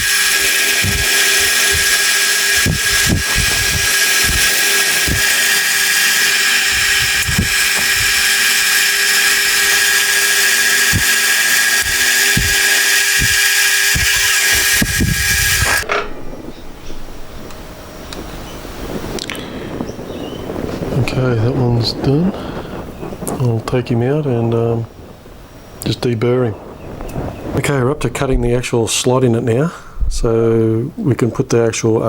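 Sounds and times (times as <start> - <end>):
machine tool whine and hiss: 0.0 - 15.9.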